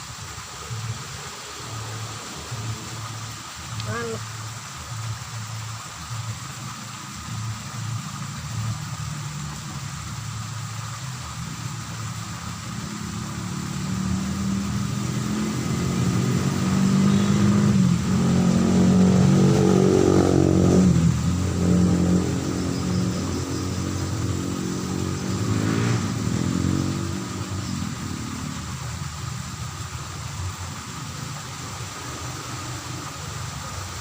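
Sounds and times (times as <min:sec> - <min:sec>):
vehicle engine passing by: 0:07.2 - 0:34.0.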